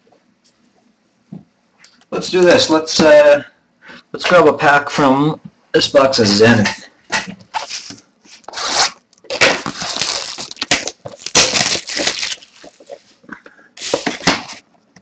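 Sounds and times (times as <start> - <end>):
packaging tearing and crinkling: 7.5 - 13.1.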